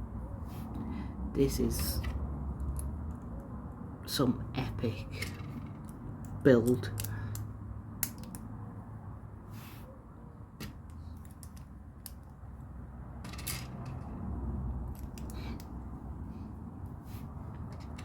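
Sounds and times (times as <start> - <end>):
plastic bricks clicking together: 5.2 - 8.4.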